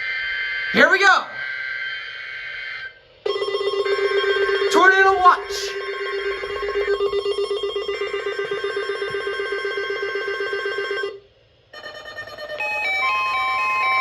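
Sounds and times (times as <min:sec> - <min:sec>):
pulsing ring-like alert tone: 0:03.2 - 0:14.0.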